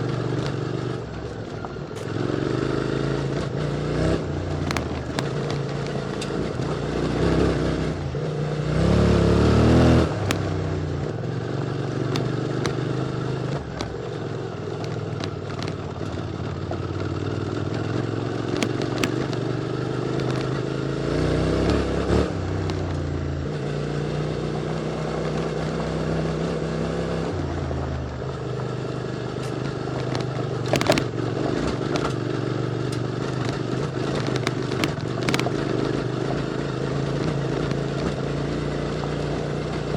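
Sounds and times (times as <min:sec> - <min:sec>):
motorcycle engine revving: 0:00.0 - 0:39.9
sharp clicks: 0:04.6 - 0:06.4, 0:10.0 - 0:11.1, 0:12.0 - 0:16.2, 0:17.7 - 0:19.6, 0:20.2 - 0:20.6, 0:29.4 - 0:35.7.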